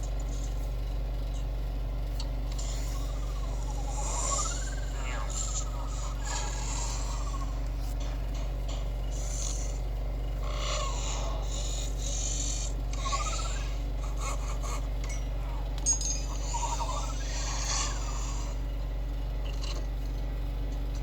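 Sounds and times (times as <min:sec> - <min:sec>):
steady low hum: 0:00.0 - 0:21.0
chirping glides: 0:14.6 - 0:18.5.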